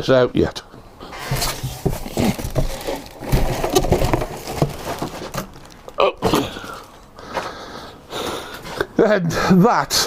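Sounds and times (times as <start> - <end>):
packaging rustling and scraping: 1.0 - 7.1.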